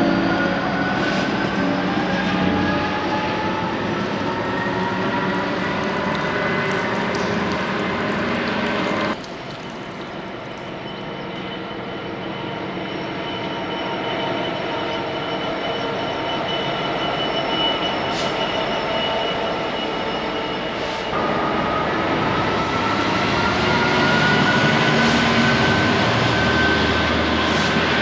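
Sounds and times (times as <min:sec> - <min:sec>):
train wheels rumbling on rails: 0:11.0 - 0:28.0.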